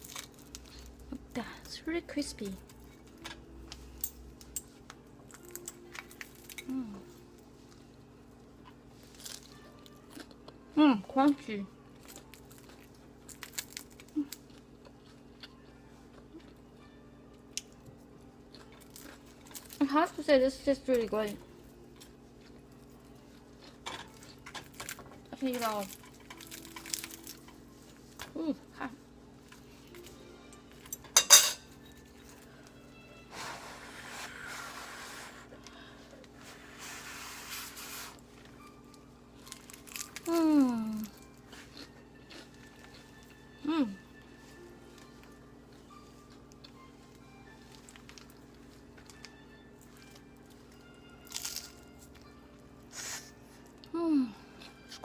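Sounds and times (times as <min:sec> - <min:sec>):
crisp crunching while chewing: 0:00.0 - 0:01.2, 0:05.3 - 0:06.9, 0:08.5 - 0:10.7, 0:11.9 - 0:16.7, 0:17.3 - 0:19.9, 0:21.9 - 0:28.2, 0:37.7 - 0:43.5, 0:44.9 - 0:53.1
soft chewing and breathing: 0:00.4 - 0:01.1, 0:32.1 - 0:38.6, 0:41.0 - 0:43.3, 0:52.8 - 0:55.0.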